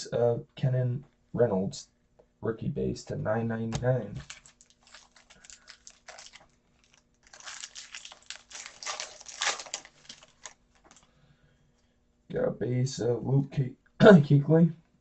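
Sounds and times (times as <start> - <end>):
card wrapper crinkling: 4.2 - 11.1.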